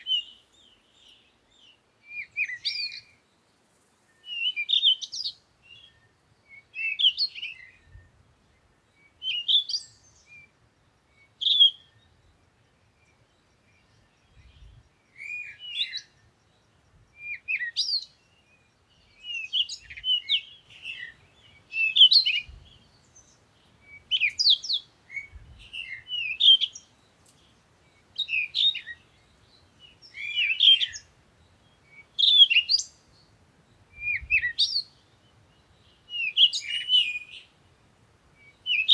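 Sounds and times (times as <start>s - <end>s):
bird chirping: 8.6s - 38.9s.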